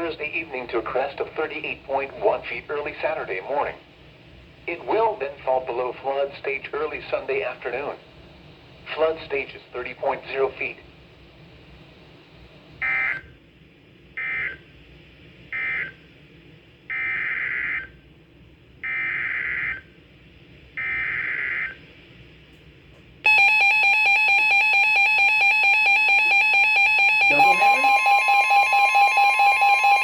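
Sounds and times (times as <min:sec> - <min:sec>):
warbling electronic alert tone: 0:26.0 - 0:30.0.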